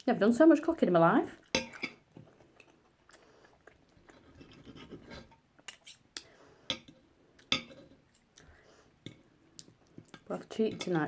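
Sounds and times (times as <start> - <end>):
cutlery scraping a plate: 1.6 - 2.0, 4.2 - 6.0, 6.7 - 8.1
cutlery tapping on a plate: 6.7 - 7.8.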